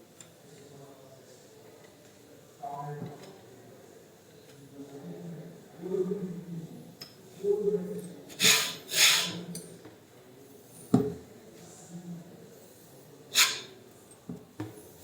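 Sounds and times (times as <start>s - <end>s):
short hissing exhales: 13.4s - 13.7s.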